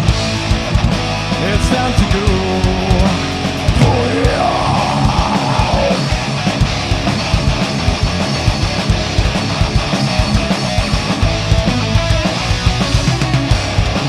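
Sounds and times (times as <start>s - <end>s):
bass guitar: 0.0s - 14.0s
distorted electric guitars: 0.0s - 14.0s
fast kick-drum hits: 3.7s - 9.9s.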